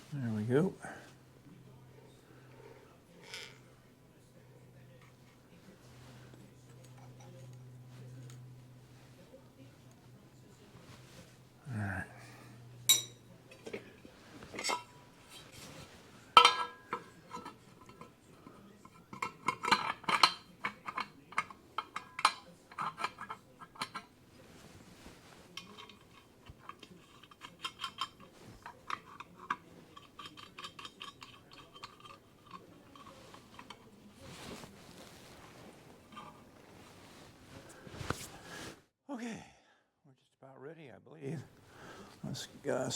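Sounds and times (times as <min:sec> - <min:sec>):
metal tools clinking: 0:06.7 - 0:08.4, 0:12.8 - 0:15.6, 0:16.3 - 0:18.1, 0:25.5 - 0:36.4.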